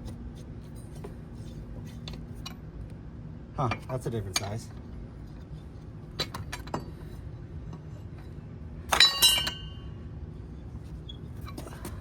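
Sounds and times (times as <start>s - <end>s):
metal tools clinking: 8.9s - 9.8s.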